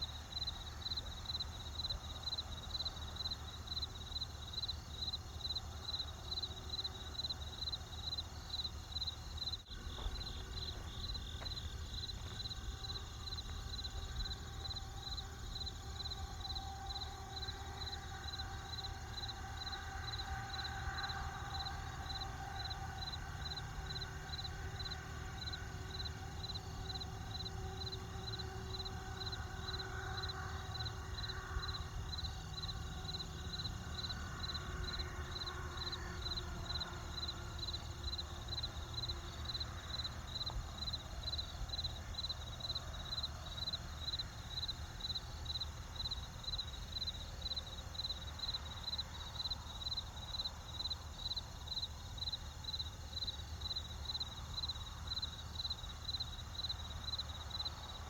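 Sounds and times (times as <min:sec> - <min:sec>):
cricket chirping: 0:00.0 - 0:58.0
campfire rumble: 0:09.6 - 0:16.3.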